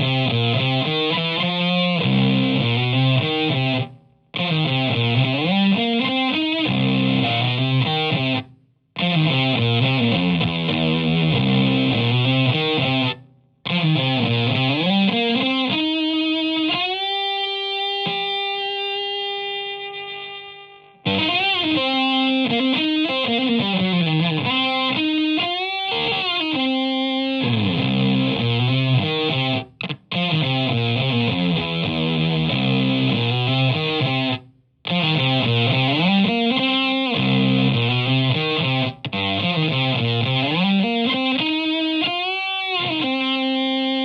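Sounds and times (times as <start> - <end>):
fuzzed electric guitar riffs: 0.0 - 44.0.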